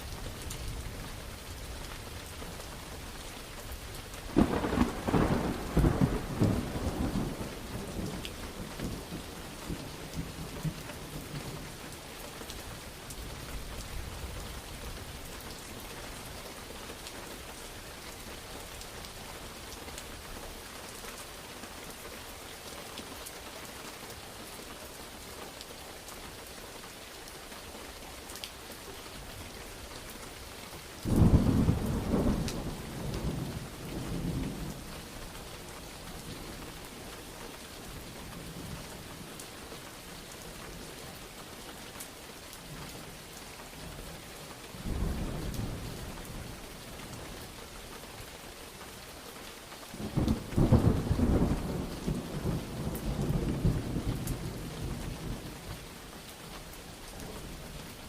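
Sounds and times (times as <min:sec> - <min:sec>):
heavy rain hissing: 0:00.0 - 0:14.4, 0:28.8 - 0:42.2
thunder clap rumbling: 0:04.3 - 0:09.2.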